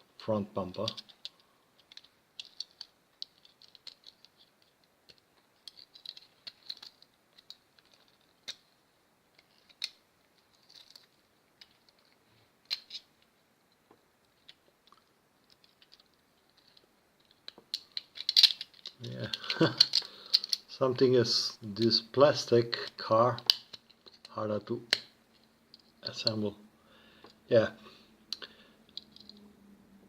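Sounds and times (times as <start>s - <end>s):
toy car parts clicking: 0.7s - 8.7s, 9.4s - 13.1s, 14.4s - 20.6s, 28.3s - 29.4s.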